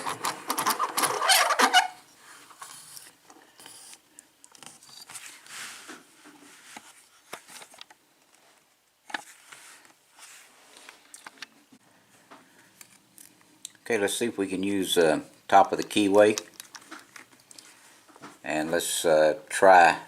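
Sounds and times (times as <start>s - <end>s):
lock-picking tools scraping: 0.0s - 2.0s.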